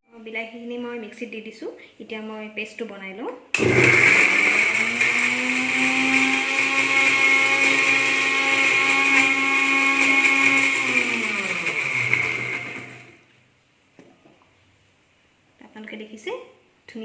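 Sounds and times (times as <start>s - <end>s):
mixer grinder motor humming: 3.6s - 13.2s.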